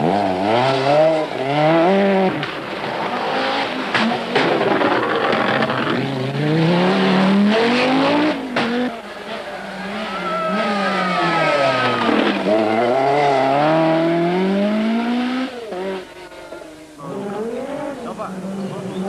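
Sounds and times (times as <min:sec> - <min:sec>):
rally car engine revving: 0:00.0 - 0:19.0
sharp cracks: 0:03.8 - 0:06.0.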